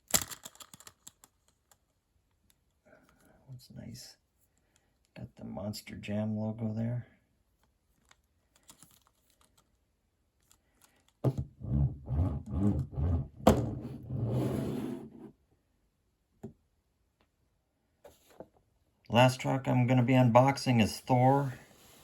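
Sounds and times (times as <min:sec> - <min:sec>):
toys clattering on a table: 0:00.1 - 0:01.3.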